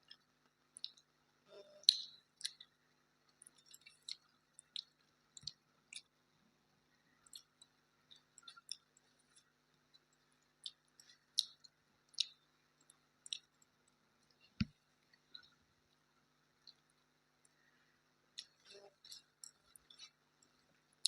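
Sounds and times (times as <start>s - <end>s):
chewing clicks and smacks: 0.8s - 1.1s, 1.7s - 2.7s, 3.3s - 6.1s, 7.2s - 15.6s, 18.4s - 21.0s.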